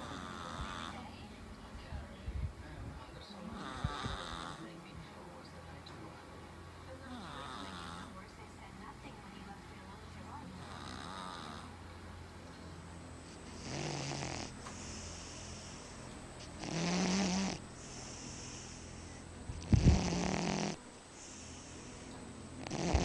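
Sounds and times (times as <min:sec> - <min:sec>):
cat snoring: 0:00.0 - 0:01.1, 0:03.5 - 0:04.8, 0:07.1 - 0:08.2, 0:10.6 - 0:11.8, 0:13.3 - 0:23.0.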